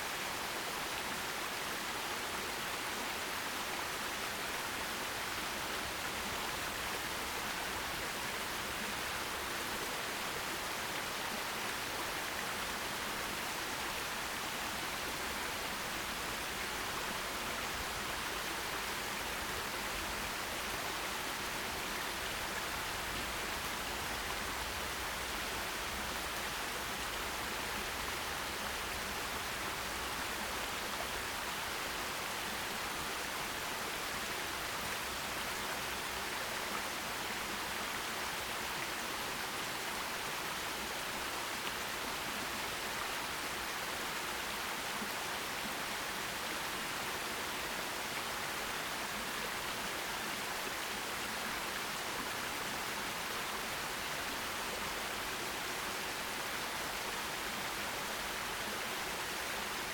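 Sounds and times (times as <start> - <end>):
stream running over rocks: 0.0 - 59.9.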